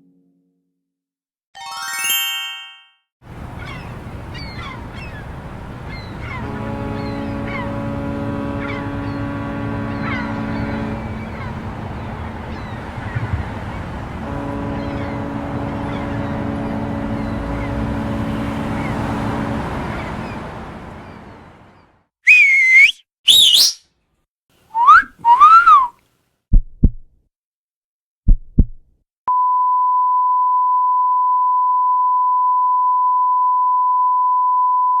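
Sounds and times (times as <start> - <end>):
harbour ambience: 3.2 - 22.0
low ship's horn: 3.3 - 21.9
warbling rising whistles: 22.3 - 23.8, 24.8 - 25.9
heartbeat thumps: 26.5 - 27.2, 28.3 - 28.9.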